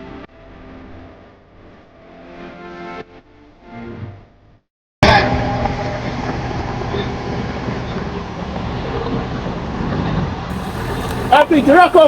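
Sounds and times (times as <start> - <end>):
road noise: 10.5 - 12.0
vehicle engine rumble: 10.5 - 12.0.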